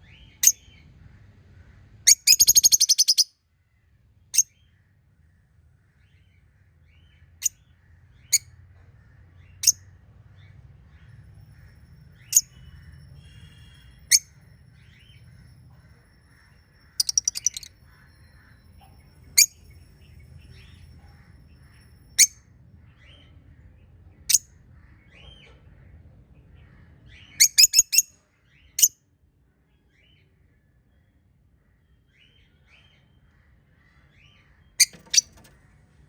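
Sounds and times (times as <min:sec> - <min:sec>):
parrots chirping: 0:02.1 - 0:03.3, 0:11.4 - 0:22.4, 0:27.4 - 0:28.1, 0:34.8 - 0:35.5
soft twittering: 0:11.1 - 0:22.3, 0:34.8 - 0:35.5.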